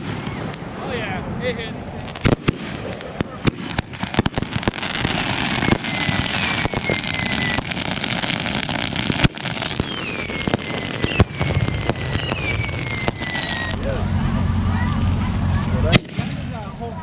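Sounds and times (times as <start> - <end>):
fireworks crackling and popping: 0.0 - 0.7, 1.8 - 14.0, 15.9 - 16.4
fireworks bangs: 0.0 - 0.8, 2.0 - 14.0, 15.9 - 16.6
fireworks whistles gliding down: 2.0 - 13.9.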